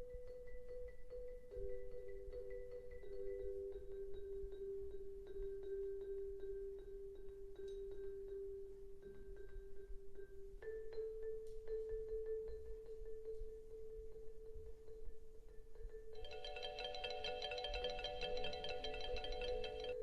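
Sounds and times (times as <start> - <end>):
xylophone tremolo: 16.2 - 20.0.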